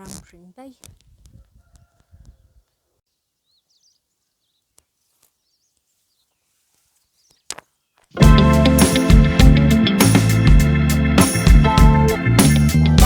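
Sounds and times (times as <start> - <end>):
background music: 8.2 - 13.0.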